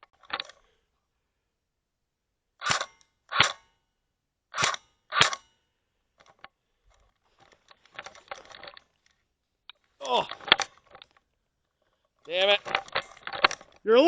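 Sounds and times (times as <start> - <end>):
airsoft gun shots: 2.6 - 3.7, 4.5 - 5.5
person shouting: 10.0 - 10.4.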